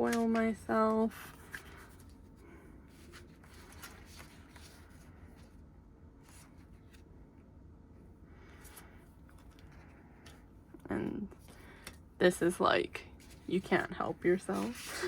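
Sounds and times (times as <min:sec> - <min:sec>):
paper rustling: 0:00.0 - 0:05.6, 0:13.2 - 0:15.0.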